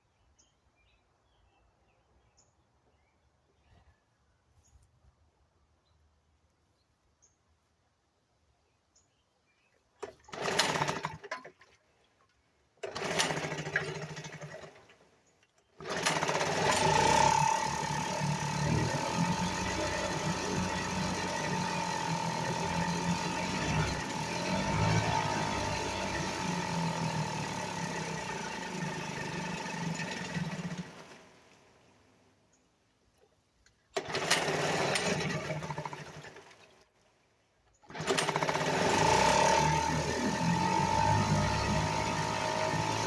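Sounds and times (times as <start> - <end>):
outboard motor starting and running: 10.0 - 11.9, 12.8 - 15.0, 15.6 - 31.6, 33.9 - 36.9, 37.8 - 43.0.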